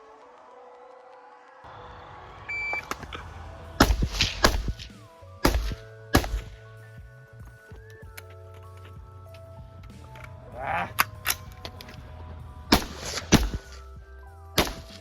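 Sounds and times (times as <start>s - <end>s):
background music: 0.0s - 15.0s
sharp gunshots: 3.8s - 6.7s, 12.7s - 13.8s, 14.6s - 15.0s.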